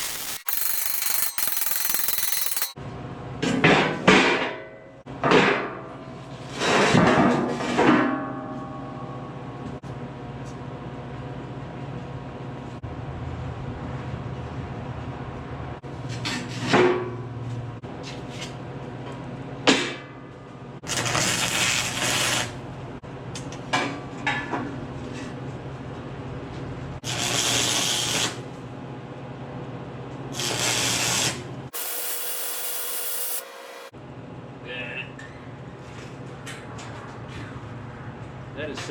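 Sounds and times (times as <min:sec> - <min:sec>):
power tool hissing: 0:00.0 - 0:00.5, 0:31.8 - 0:33.9
sharp metal knocks: 0:00.0 - 0:02.8.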